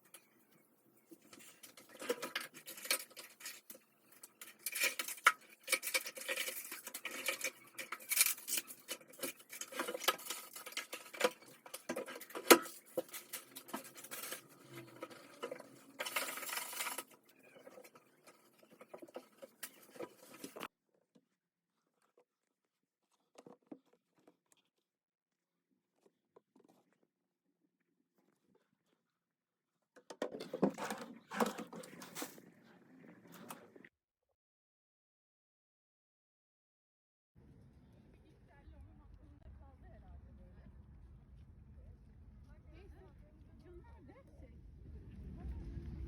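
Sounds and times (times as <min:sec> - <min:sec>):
household objects handled and set down: 0:01.1 - 0:20.7, 0:30.0 - 0:32.5.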